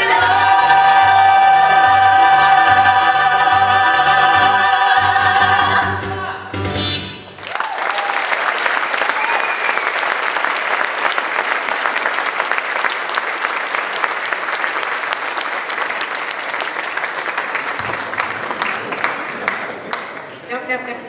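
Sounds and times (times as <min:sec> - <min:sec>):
audience applauding: 0:07.4 - 0:20.5.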